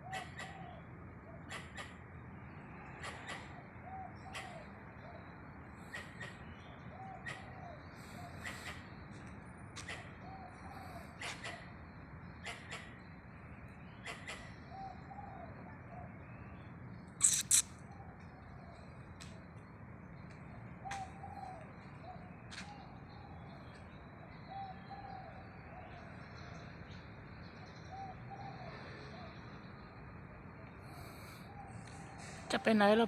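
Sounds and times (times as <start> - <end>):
squirrel high chirps: 17.2 - 17.6
squirrel calling: 17.2 - 17.7.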